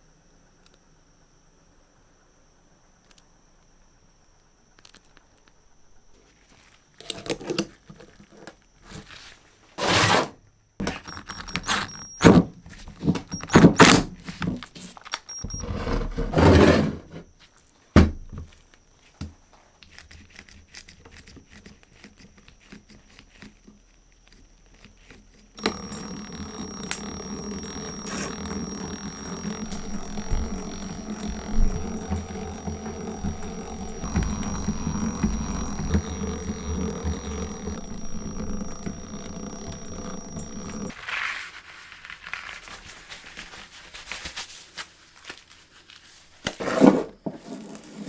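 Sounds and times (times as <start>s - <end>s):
steady mechanical noise: 9.8s - 12.5s, 15.3s - 17.3s, 24.8s - 41.0s.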